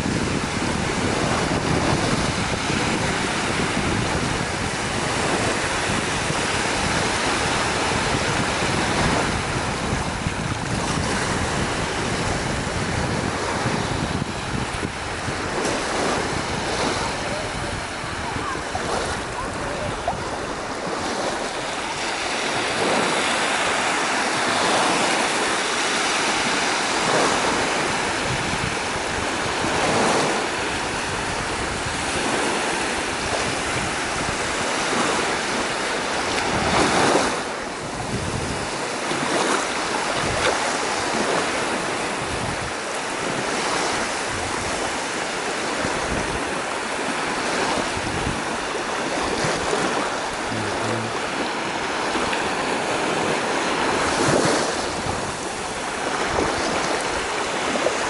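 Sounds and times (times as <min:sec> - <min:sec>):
waves washing onto shore: 0:00.0 - 0:58.0
wind buffeting microphone: 0:00.0 - 0:58.0.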